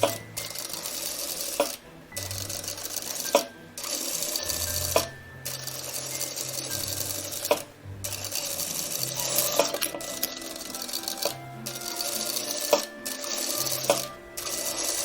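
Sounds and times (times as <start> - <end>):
sewing machine stitching: 0.0 - 15.0.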